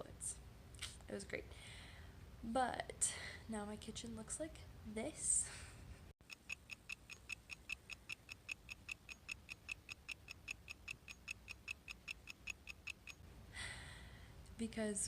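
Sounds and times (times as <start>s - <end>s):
fast mechanical ticking: 6.2s - 13.2s.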